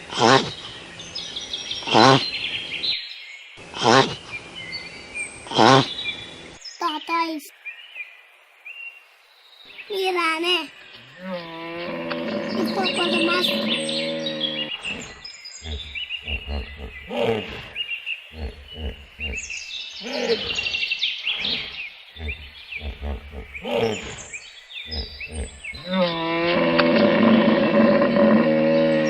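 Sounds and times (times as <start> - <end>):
hippopotamus grunting and honking: 0.0 - 0.6, 1.8 - 2.8, 3.6 - 4.4, 5.4 - 6.1, 11.2 - 29.0
birds chirping: 0.0 - 29.0.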